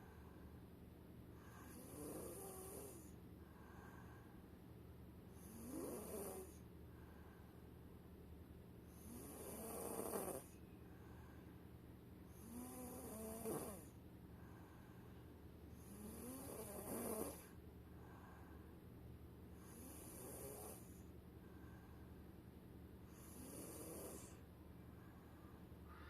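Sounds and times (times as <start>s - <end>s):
boy snoring: 1.6s - 3.1s, 5.4s - 6.6s, 9.0s - 10.5s, 12.4s - 13.9s, 15.8s - 17.5s, 19.6s - 20.9s, 23.1s - 24.4s.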